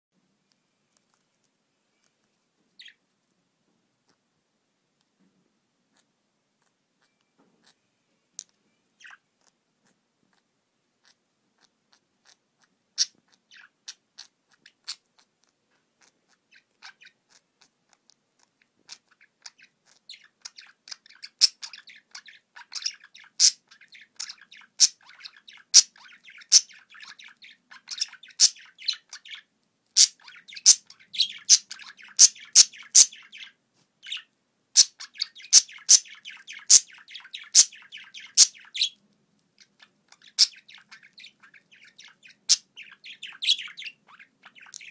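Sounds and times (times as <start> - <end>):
budgerigars chattering and warbling: 11.0 - 15.3, 16.0 - 17.8, 18.4 - 39.0, 39.6 - 44.9.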